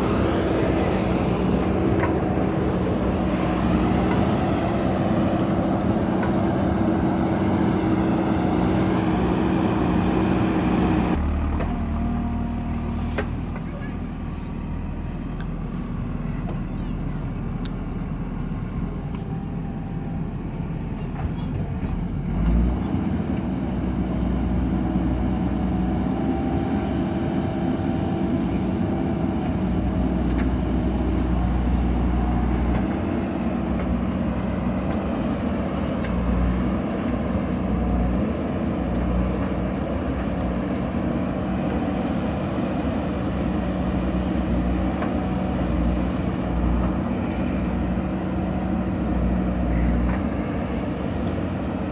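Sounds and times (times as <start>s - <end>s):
diesel engine running under load: 0.0s - 51.9s.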